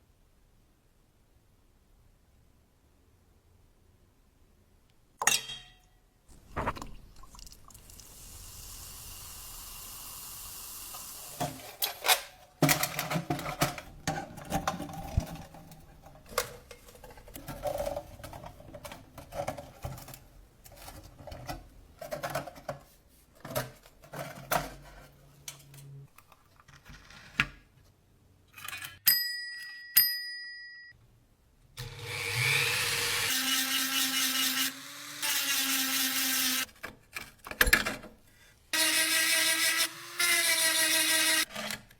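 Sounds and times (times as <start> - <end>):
cash register bell ringing: 29.0 - 31.0
power drill running: 31.8 - 36.7, 38.8 - 41.5.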